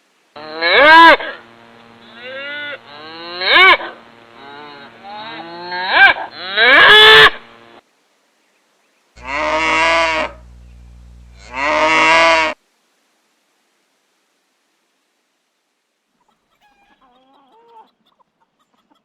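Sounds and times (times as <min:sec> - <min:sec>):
cattle mooing: 0:02.0 - 0:07.6, 0:09.2 - 0:10.6, 0:11.3 - 0:12.6.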